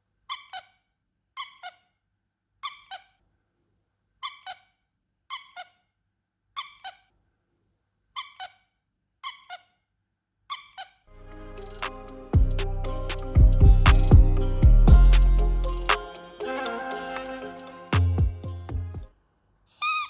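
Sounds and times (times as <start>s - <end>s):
squeaky dog toy squeaking: 0.3s - 0.8s, 1.4s - 1.9s, 2.6s - 3.2s, 4.2s - 5.8s, 6.6s - 7.1s, 8.2s - 9.8s, 10.5s - 11.0s, 19.8s - 20.0s
background music: 11.1s - 19.1s.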